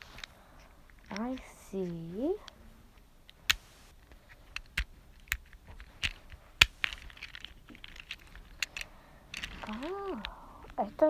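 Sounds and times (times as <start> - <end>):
plastic fidget toy clicks: 3.3 - 11.0.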